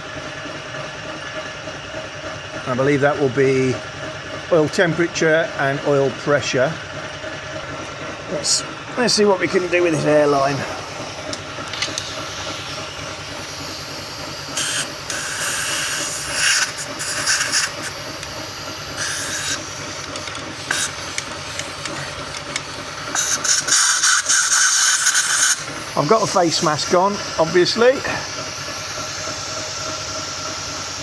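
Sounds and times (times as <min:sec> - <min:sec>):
steady low hum: 0:08.2 - 0:31.0
compressed air blow gun hissing: 0:09.4 - 0:31.0.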